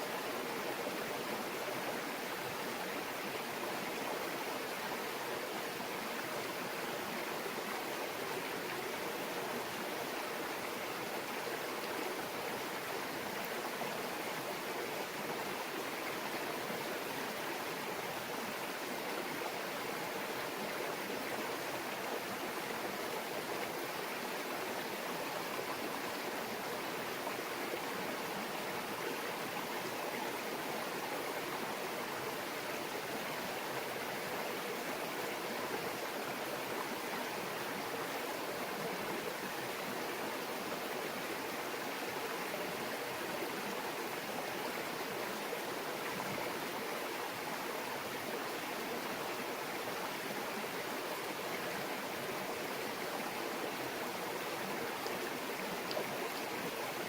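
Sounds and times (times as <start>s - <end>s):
stream babbling over stones: 0.1s - 57.0s.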